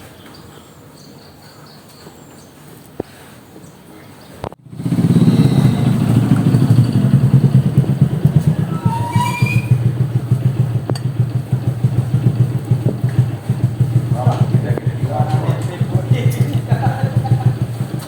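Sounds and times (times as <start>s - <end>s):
small engine running: 4.6s - 18.0s.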